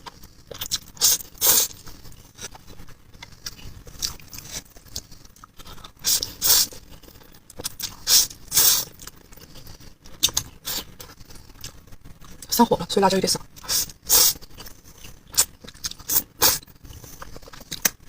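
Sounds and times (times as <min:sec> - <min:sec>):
chewing noise: 0:00.0 - 0:12.5, 0:13.5 - 0:18.0.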